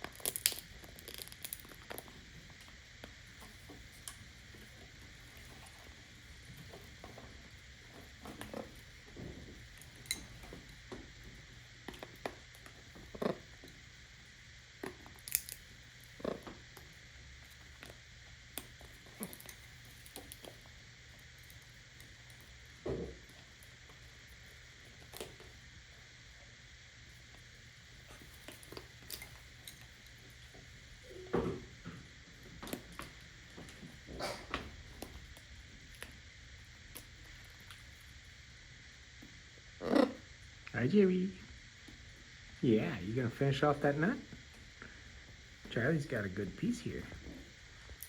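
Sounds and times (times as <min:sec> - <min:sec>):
parrot beak cracking nut shell: 0:00.0 - 0:02.1, 0:14.8 - 0:16.4.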